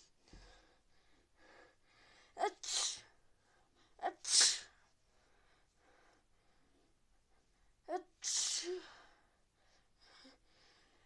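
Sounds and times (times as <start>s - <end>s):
person sneezing: 2.4s - 3.1s, 4.0s - 4.8s, 8.0s - 8.9s
soft breathing: 4.7s - 7.8s, 8.6s - 11.0s.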